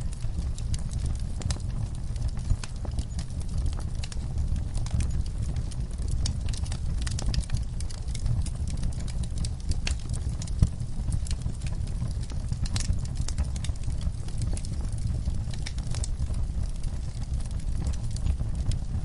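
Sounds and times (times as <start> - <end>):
log fire crackling: 0.0 - 19.0.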